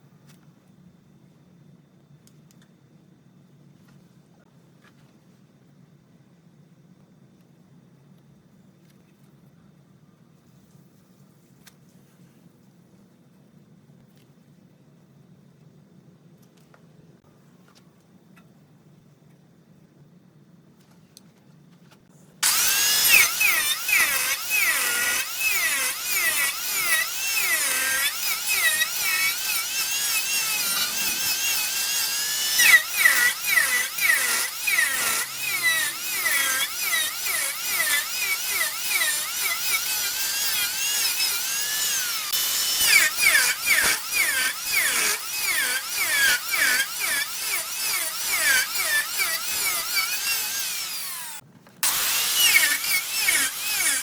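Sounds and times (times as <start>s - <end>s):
lathe tool scraping wood: 22.4s - 54.0s.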